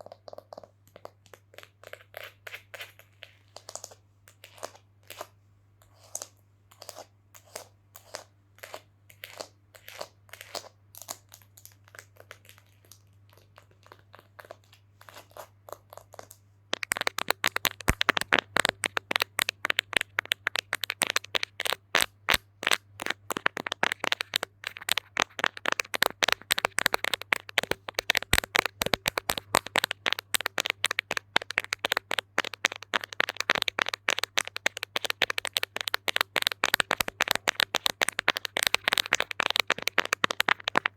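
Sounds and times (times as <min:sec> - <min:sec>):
tapping and knocking on hard object: 0:16.8 - 0:40.9.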